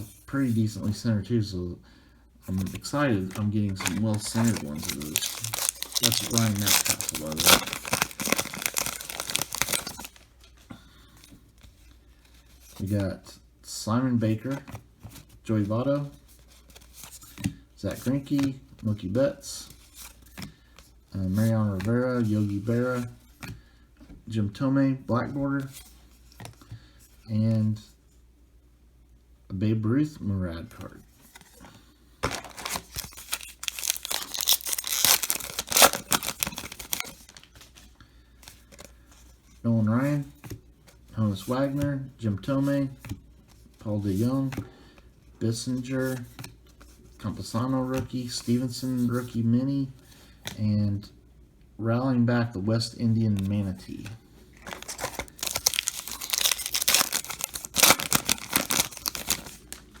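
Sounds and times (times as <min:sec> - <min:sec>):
wrapper being torn and crinkled: 0:03.3 - 0:10.3, 0:32.2 - 0:37.5, 0:54.6 - 1:00.0.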